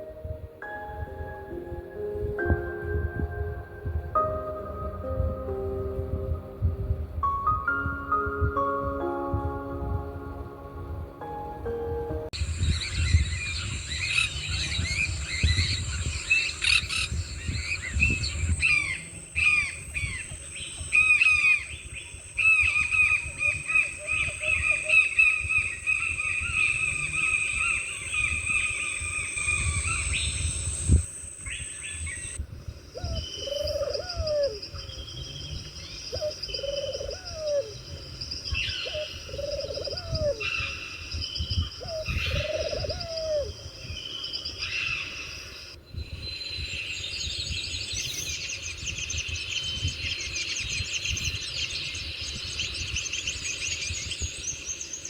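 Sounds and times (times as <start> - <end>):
birds chirping: 7.4 - 55.0
high insect drone: 12.4 - 32.4
lower insect drone: 12.4 - 41.2.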